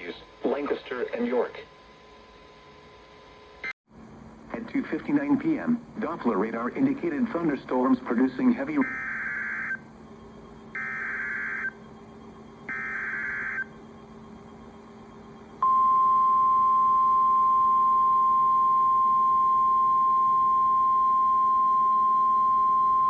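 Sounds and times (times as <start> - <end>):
steady alarm tone: 8.1 - 23.0
buzzing data chirp: 8.6 - 23.0.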